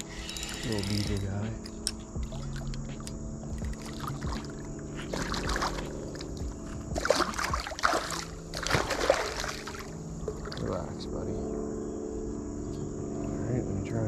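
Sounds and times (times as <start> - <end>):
fish splashing at water surface: 3.6 - 6.4, 7.0 - 10.8.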